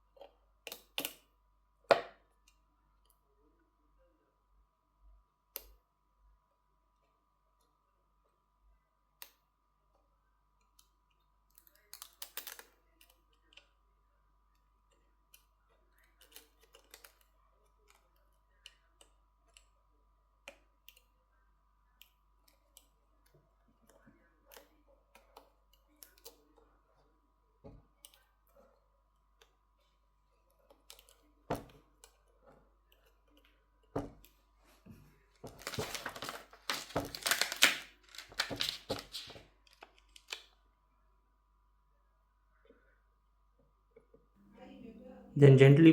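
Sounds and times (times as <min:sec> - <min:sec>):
tools clicking on phone parts: 0:16.1 - 0:19.7.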